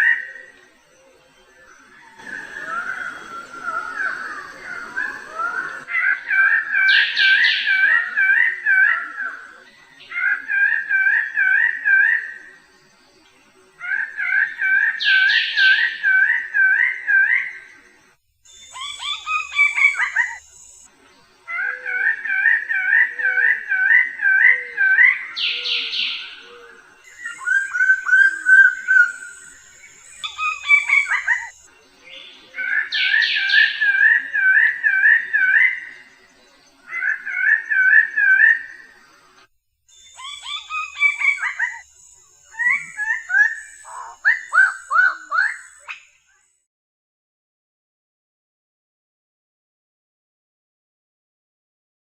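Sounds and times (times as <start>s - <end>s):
steady high buzz: 0.0s - 46.4s
bird warbling: 18.6s - 20.4s, 21.5s - 31.6s, 40.0s - 41.8s, 42.5s - 46.1s
harsh bird rasps: 40.1s - 41.8s, 42.6s - 46.1s.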